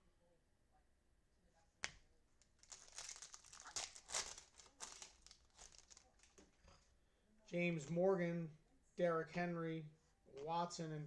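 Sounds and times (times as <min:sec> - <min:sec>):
wrapper tearing and crinkling: 0:02.5 - 0:06.4.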